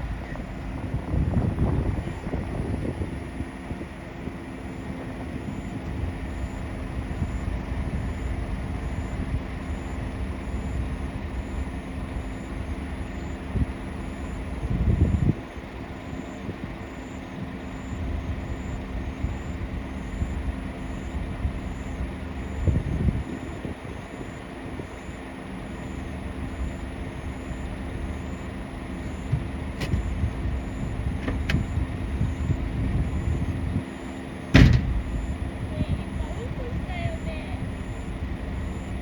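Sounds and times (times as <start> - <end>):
vehicle engine rumbling: 0.0 - 39.0
sharp knock: 34.6 - 35.1.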